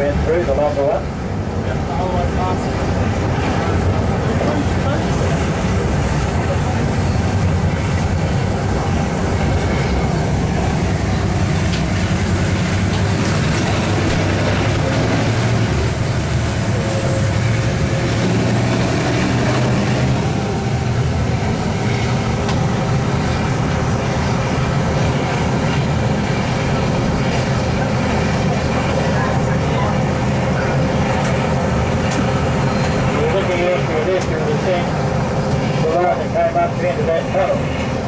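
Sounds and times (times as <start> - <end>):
carriages rumbling on rails: 0.0 - 38.0
diesel locomotive engine working: 0.0 - 38.0.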